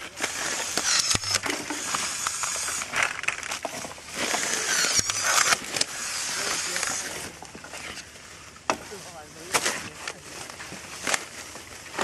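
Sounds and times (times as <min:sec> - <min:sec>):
chainsaw cutting wood: 0:00.0 - 0:07.4.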